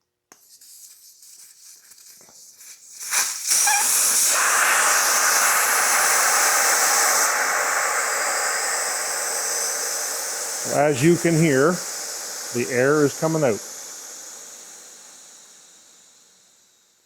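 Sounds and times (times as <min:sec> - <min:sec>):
air hissing from tire valve: 0:00.6 - 0:10.6.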